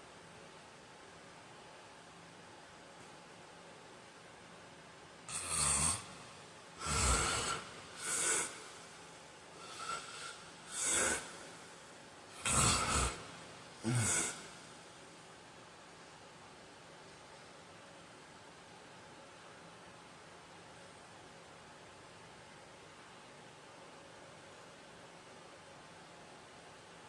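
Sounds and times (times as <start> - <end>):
faint steady hiss: 0.0 - 27.0
man snoring and snorting: 5.3 - 6.2, 6.8 - 8.8, 9.6 - 11.6, 12.3 - 14.6.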